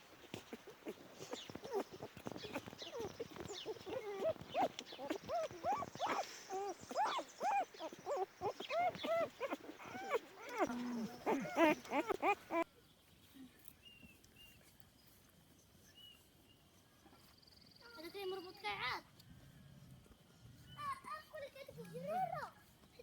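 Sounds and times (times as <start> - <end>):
puppies whimpering and yelping: 0.0 - 12.7.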